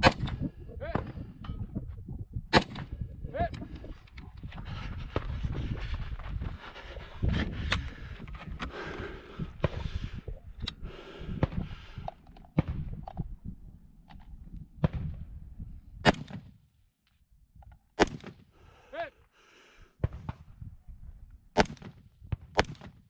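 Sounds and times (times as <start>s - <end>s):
rifle shots: 2.5s - 2.9s, 16.0s - 16.4s, 18.0s - 18.4s, 21.6s - 21.9s.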